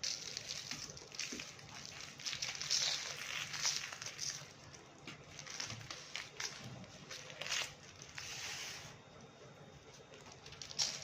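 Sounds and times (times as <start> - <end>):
dry clay crumbling: 0.0 - 8.3.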